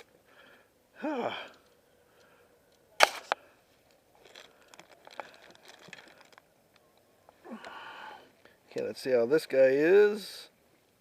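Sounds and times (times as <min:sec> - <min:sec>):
handling clicks and rustling: 0:01.5 - 0:07.7.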